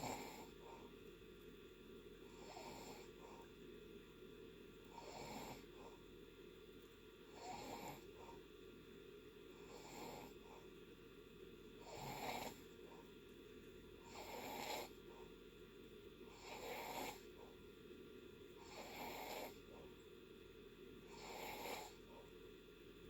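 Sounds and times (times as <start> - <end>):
person snoring faintly: 0.0 - 0.9, 2.3 - 3.5, 4.9 - 6.0, 7.3 - 8.4, 9.6 - 10.6, 11.8 - 13.1, 14.0 - 15.3, 16.3 - 17.6, 18.6 - 20.0, 21.0 - 22.3.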